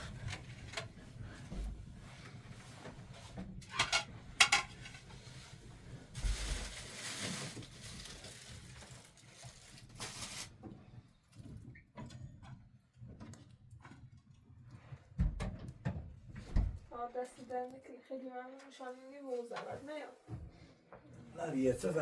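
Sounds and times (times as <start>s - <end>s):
rustling and shuffling: 0.0s - 11.7s
dishes clinking and knocking: 3.6s - 5.1s.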